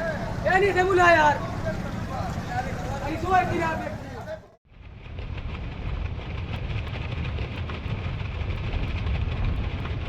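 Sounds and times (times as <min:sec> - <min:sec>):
low rumble: 0:04.7 - 0:10.0.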